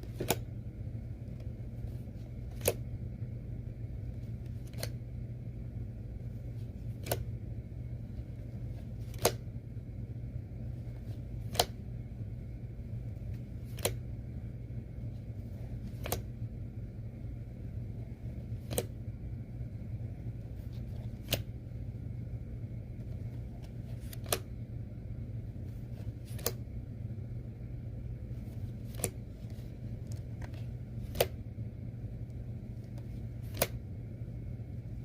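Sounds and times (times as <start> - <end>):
trading cards snapping: 0.0 - 0.5, 2.1 - 2.9, 4.4 - 5.0, 6.7 - 7.3, 8.7 - 9.4, 11.0 - 11.8, 13.6 - 14.0, 15.8 - 16.3, 18.5 - 19.0, 20.6 - 21.5, 23.6 - 24.5, 25.9 - 26.6, 28.4 - 31.4, 32.9 - 33.8
low hum: 0.0 - 35.0.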